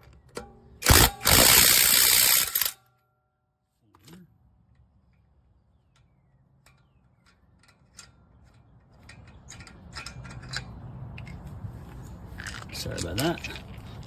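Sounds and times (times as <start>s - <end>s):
light metallic clicks and rattles: 5.9s - 14.0s.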